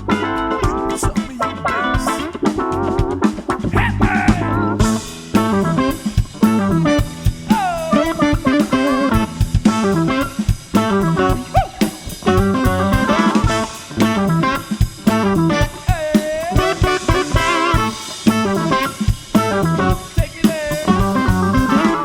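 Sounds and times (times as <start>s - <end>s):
busy drum kit: 0.0s - 22.0s
lead guitar with bent notes: 0.0s - 22.0s.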